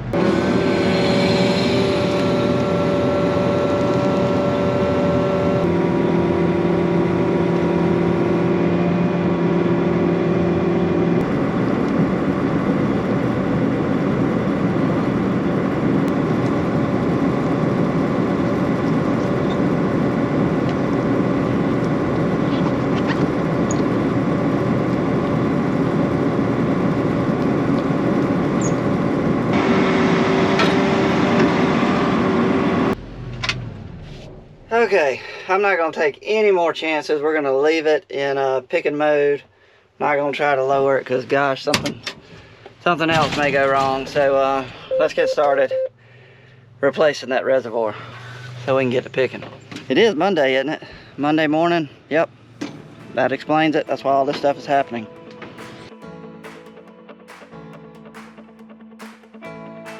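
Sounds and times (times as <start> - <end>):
cotton picker diesel engine and fans: 0.0 - 33.8, 43.8 - 55.9.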